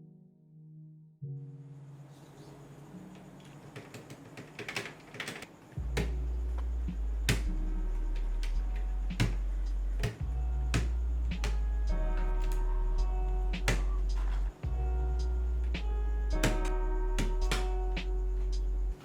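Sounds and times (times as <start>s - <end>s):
sharp plastic keyboard clicks: 3.8s - 6.2s
background music with deep bass: 5.8s - 19.0s.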